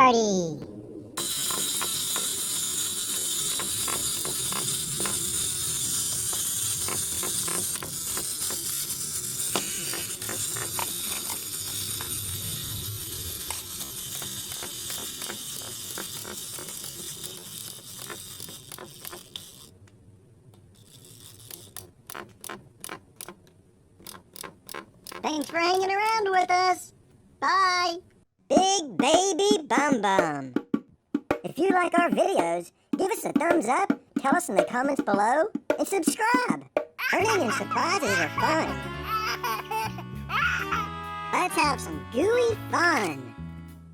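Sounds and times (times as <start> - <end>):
plastic toy gears whirring and clicking: 1.2 - 19.8, 20.6 - 23.4, 24.0 - 26.4, 37.0 - 40.8, 41.4 - 43.2.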